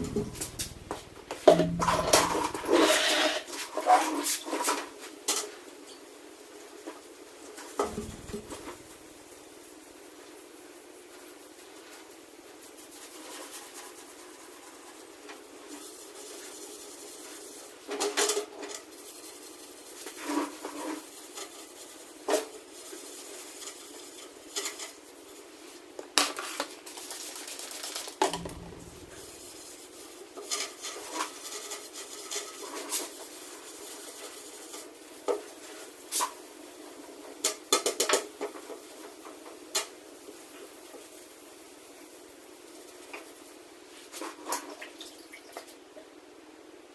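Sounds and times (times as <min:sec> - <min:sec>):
rubbing and scraping on metal: 0:00.0 - 0:04.4, 0:07.9 - 0:09.3, 0:28.3 - 0:35.8.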